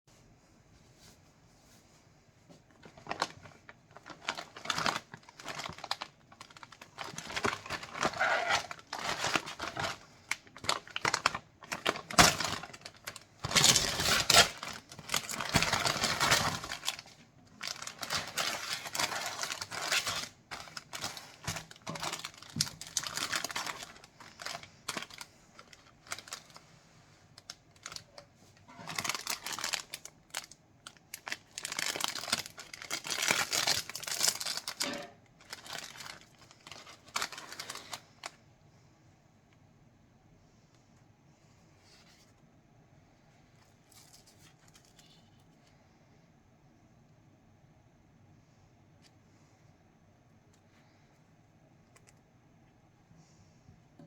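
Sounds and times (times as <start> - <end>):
plastic wrapper crinkling: 2.7 - 38.4, 43.6 - 45.6.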